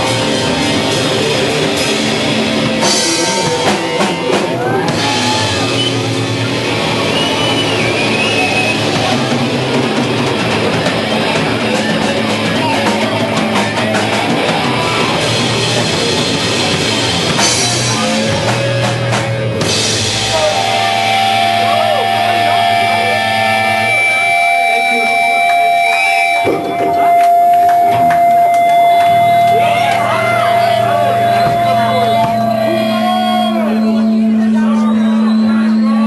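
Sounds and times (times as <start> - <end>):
pounding drums: 0.0 - 34.5
distorted guitar: 0.0 - 36.0
punk band playing: 0.0 - 36.0
ringing guitar tones: 0.0 - 36.0.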